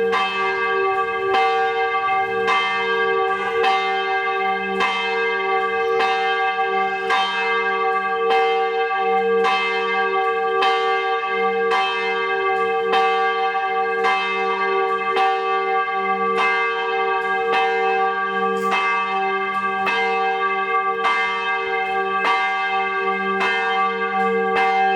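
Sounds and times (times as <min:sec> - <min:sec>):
church bell tolling: 0:00.0 - 0:24.9.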